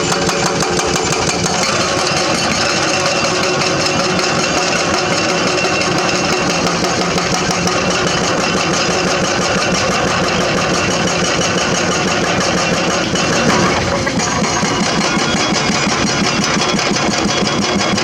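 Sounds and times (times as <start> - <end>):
excavator diesel engine rattling: 0.0 - 18.0.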